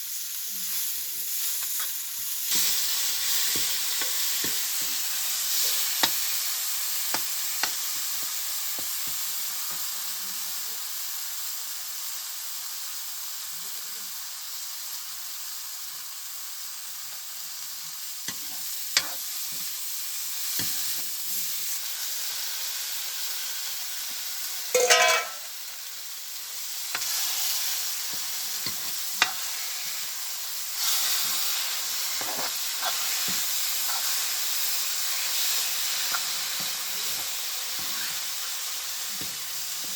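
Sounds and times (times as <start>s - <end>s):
food sizzling in a pan: 0.0s - 39.9s.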